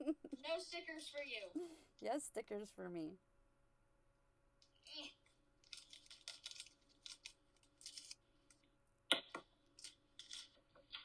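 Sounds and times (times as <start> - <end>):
sticker sheets rustling: 5.6 - 8.7, 9.7 - 11.0.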